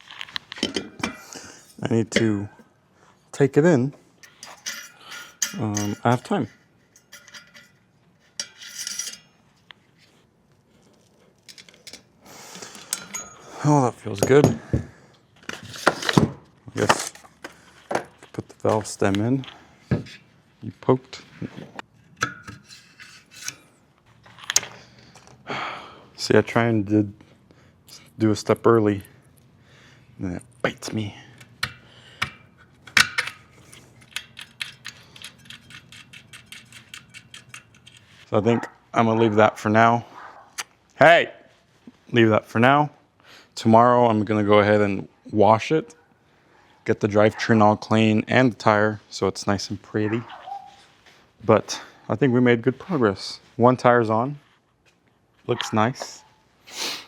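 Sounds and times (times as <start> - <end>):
metal parts clinking: 4.2 - 9.4, 11.4 - 14.6, 31.4 - 38.3
metallic clicks of hand tools: 31.4 - 38.1.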